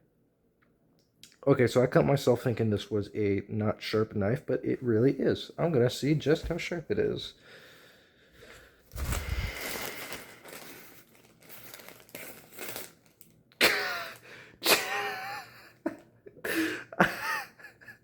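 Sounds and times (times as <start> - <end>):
rustling handling noise: 8.4 - 13.4
man gasping in pain: 16.4 - 17.0.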